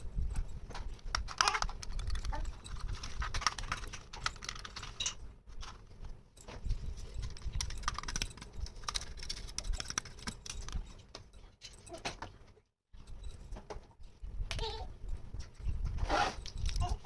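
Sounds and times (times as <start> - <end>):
plastic toy pieces clicking: 1.0 - 5.2, 7.2 - 10.8.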